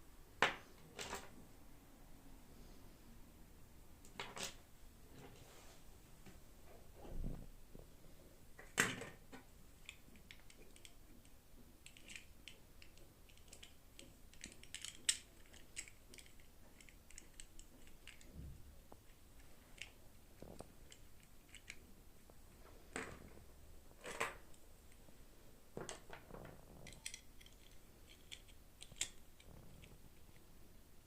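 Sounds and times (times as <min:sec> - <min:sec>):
small light clicks and crinkles: 0:08.6 - 0:25.1, 0:25.8 - 0:30.8.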